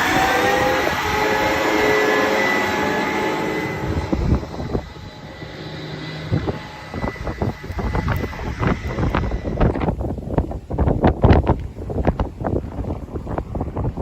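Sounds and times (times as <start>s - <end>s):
vehicle engine accelerating: 0.0s - 10.0s
wind gusts on microphone: 0.0s - 14.0s.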